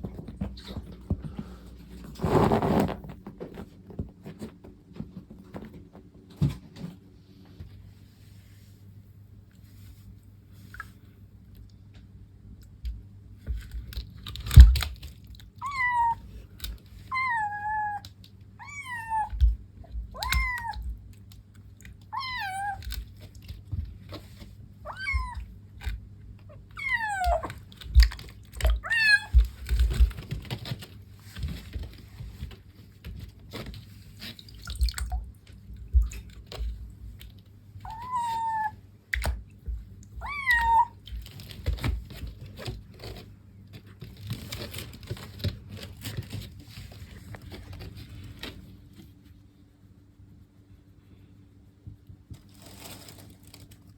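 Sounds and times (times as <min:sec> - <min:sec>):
kitten meowing: 0:15.6 - 0:16.2, 0:17.1 - 0:19.5, 0:20.1 - 0:20.9, 0:22.1 - 0:22.9, 0:24.8 - 0:25.5, 0:26.7 - 0:27.6, 0:28.7 - 0:29.5, 0:37.8 - 0:38.8, 0:40.2 - 0:41.0.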